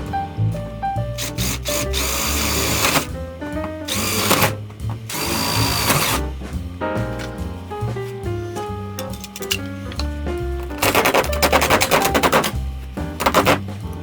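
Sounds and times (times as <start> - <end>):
background music: 0.0 - 14.0
power drill running: 1.2 - 3.1, 3.9 - 6.3, 13.2 - 13.6.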